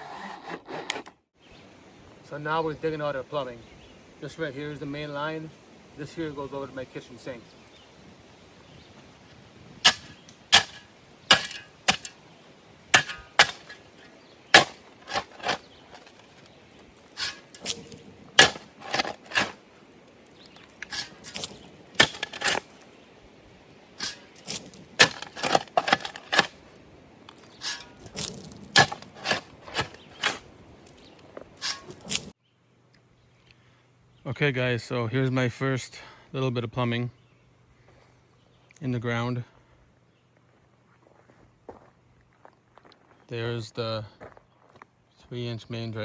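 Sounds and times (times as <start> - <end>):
digging tool chopping soil: 9.8 - 12.2, 12.9 - 19.7, 20.4 - 22.8, 24.0 - 32.3.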